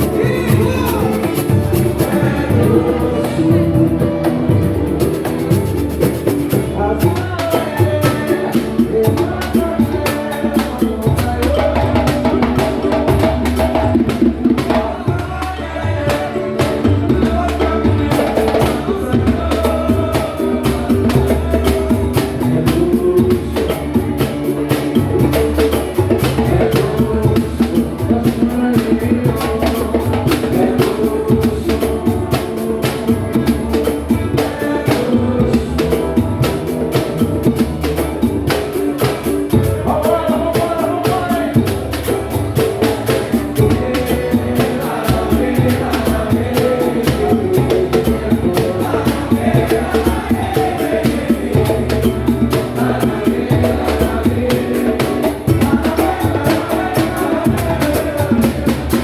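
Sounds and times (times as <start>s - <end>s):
dense percussion rhythm: 0.0s - 59.0s
samba band playing: 0.0s - 59.0s.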